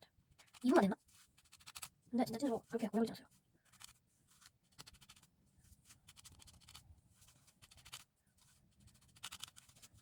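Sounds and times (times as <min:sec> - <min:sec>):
felting needle jabbing into sponge: 0:00.3 - 0:02.0, 0:05.9 - 0:10.0.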